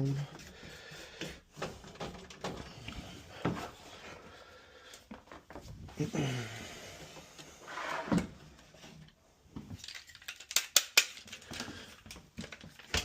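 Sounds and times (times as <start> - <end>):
rustling and scraping: 0.3 - 4.3.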